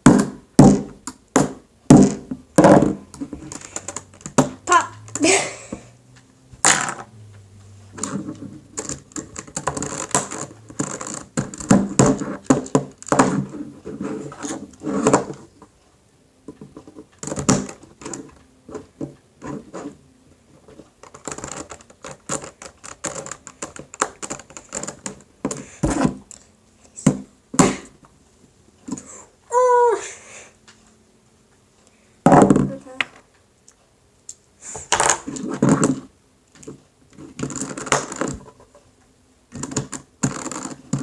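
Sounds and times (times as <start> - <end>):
plastic cube pieces clicking: 21.0 - 25.6.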